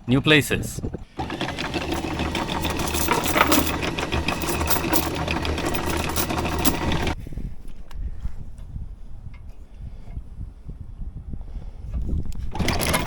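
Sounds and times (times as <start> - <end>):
windlass motor humming: 0.0 - 13.0
chain clattering: 1.2 - 7.2, 12.5 - 13.0.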